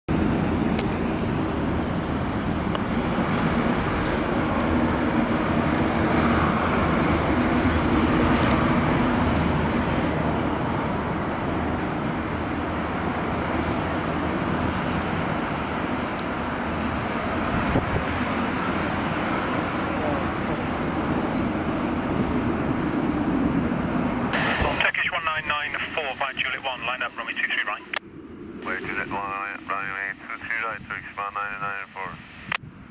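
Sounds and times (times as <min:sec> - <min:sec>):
gusty wind: 0:00.1 - 0:32.9
jet engines running: 0:00.1 - 0:32.9.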